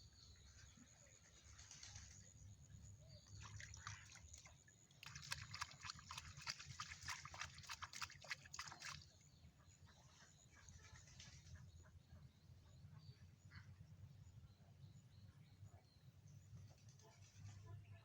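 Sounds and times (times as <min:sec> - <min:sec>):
patter of small splashes: 0:00.6 - 0:11.7
water splashing and dripping: 0:03.4 - 0:09.1.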